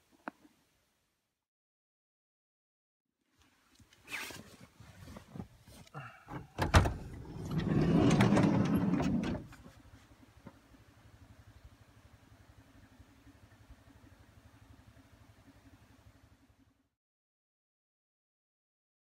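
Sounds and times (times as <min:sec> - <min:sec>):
car engine starting and idling: 0:06.3 - 0:09.8
door slamming shut: 0:06.6 - 0:09.5.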